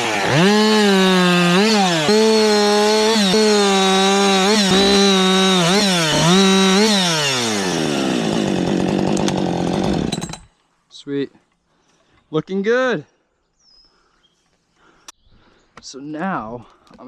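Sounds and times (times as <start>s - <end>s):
chainsaw cutting wood: 0.0s - 10.6s.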